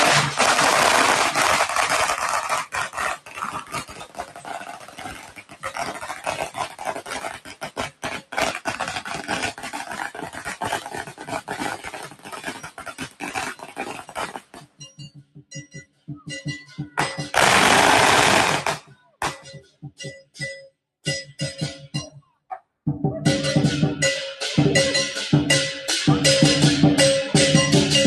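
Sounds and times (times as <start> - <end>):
firecrackers banging: 0.0 - 20.0.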